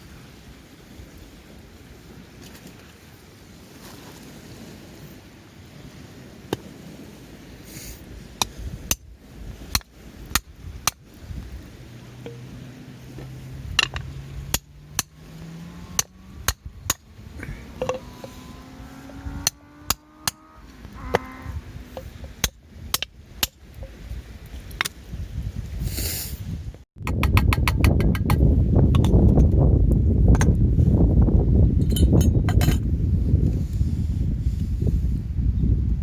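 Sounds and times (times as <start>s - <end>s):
hand tool striking: 13.8s - 15.2s, 19.4s - 20.4s.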